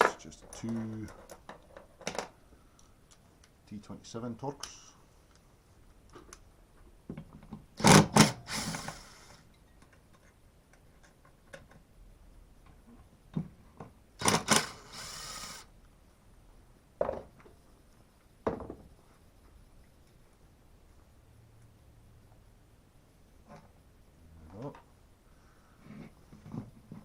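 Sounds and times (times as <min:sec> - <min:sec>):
screw rasping: 0:07.8 - 0:09.4, 0:14.2 - 0:15.7.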